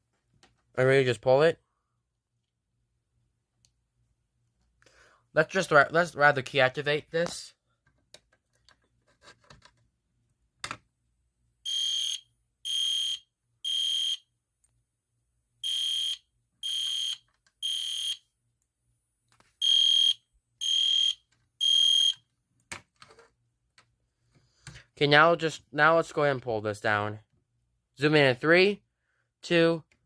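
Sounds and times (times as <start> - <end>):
fire alarm horn beeping: 11.6 - 14.3, 15.6 - 18.2, 19.6 - 22.2.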